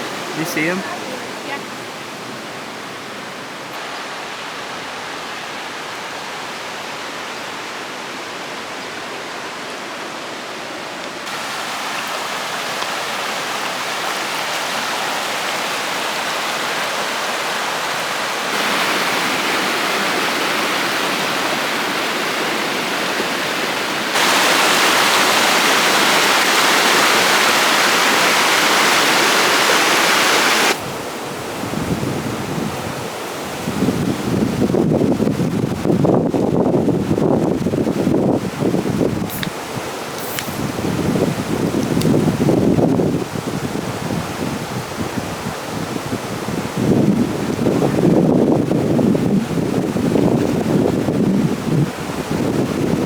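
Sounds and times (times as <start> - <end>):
river rapids roaring: 0.0 - 33.7.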